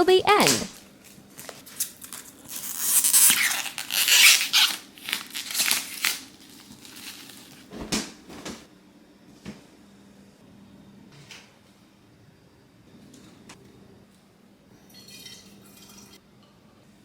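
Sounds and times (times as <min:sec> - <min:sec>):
packaging tearing and crinkling: 0:01.0 - 0:07.7.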